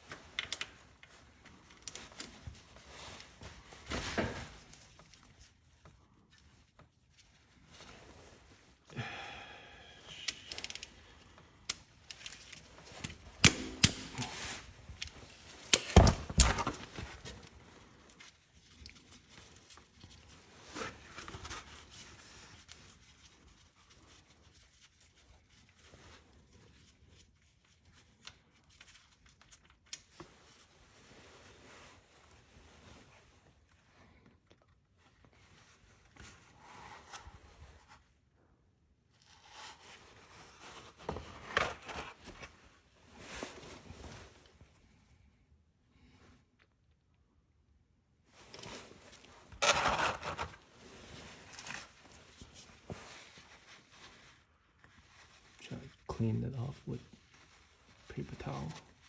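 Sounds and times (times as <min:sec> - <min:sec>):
hand tools clicking and knocking: 0:13.4 - 0:14.5.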